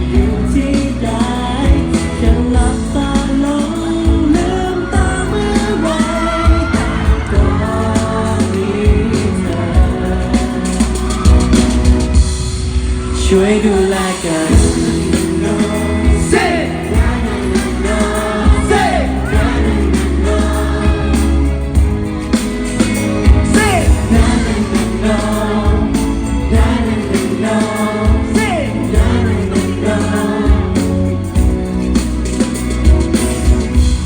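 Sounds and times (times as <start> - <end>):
pop song with singing: 0.0 - 34.0.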